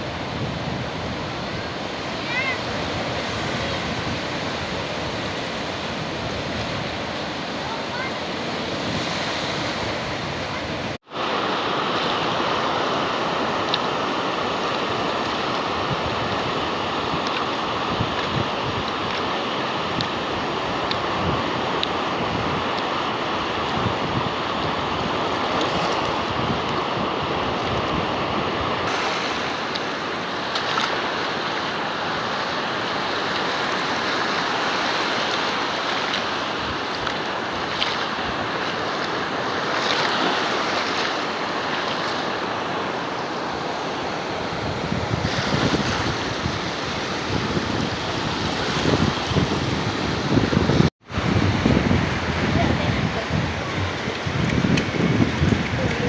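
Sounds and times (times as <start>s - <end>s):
wind buffeting microphone: 0.0s - 11.0s, 14.6s - 31.3s, 43.7s - 56.0s
surf washing onto beach: 0.0s - 56.0s.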